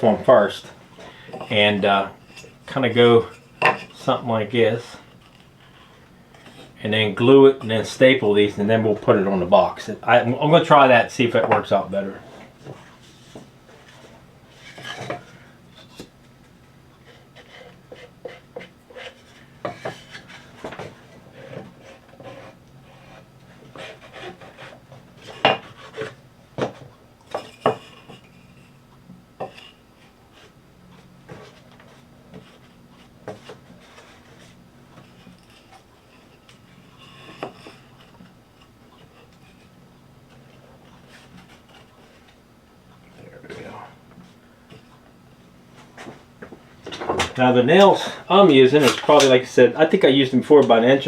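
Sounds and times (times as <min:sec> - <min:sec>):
wood knocking and scraping: 0:11.4 - 0:16.2, 0:17.0 - 0:28.3, 0:31.2 - 0:39.7, 0:45.8 - 0:47.9.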